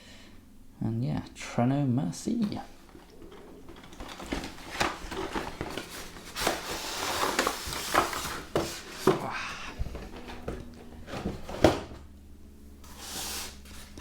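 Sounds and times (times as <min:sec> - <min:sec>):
cardboard scraping rustle: 0:02.3 - 0:12.1, 0:12.8 - 0:14.0.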